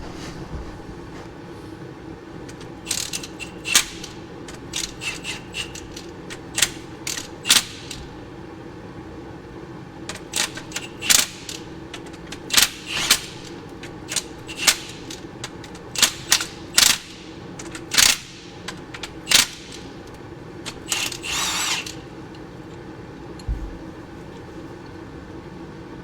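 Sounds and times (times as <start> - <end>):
steady low hum: 0.0 - 26.0
metallic tool clicks and clinks: 2.5 - 8.0, 10.1 - 22.0.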